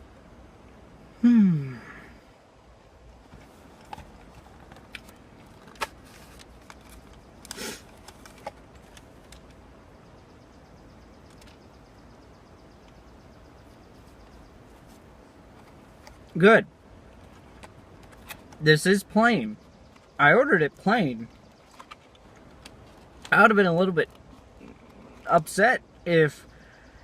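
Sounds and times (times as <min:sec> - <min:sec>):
low steady hum: 0:00.0 - 0:27.0
food packaging clicks and rustle: 0:03.3 - 0:09.6, 0:17.1 - 0:18.6, 0:21.2 - 0:23.4.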